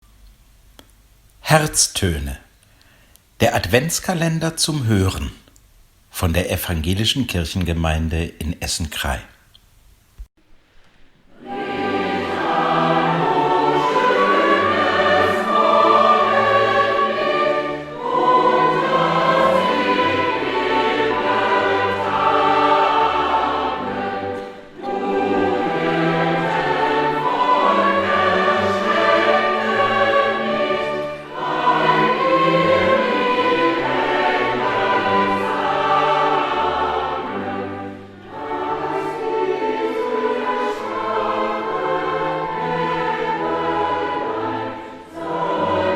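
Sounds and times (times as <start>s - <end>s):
choir singing: 11.3s - 45.9s.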